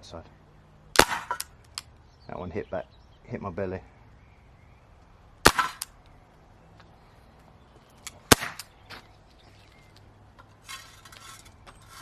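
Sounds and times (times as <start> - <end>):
air pistol shots: 1.0 - 1.5, 5.4 - 6.0, 8.2 - 8.7.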